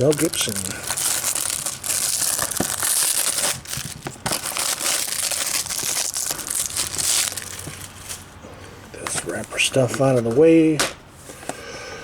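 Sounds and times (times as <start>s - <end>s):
plastic wrap crinkling: 0.0s - 8.3s.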